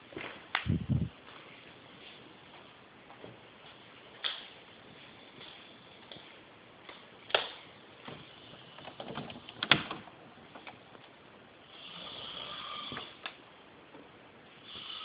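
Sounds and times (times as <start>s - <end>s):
man snoring: 11.6s - 13.2s, 14.6s - 15.0s.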